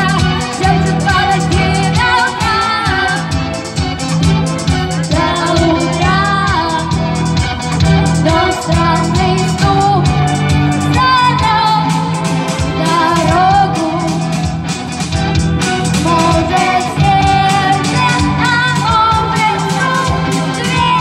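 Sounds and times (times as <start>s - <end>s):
bass: 0.0s - 21.0s
guitar: 0.0s - 21.0s
steady drum beat: 0.0s - 21.0s
person singing: 4.7s - 7.0s, 8.2s - 14.6s, 15.9s - 21.0s.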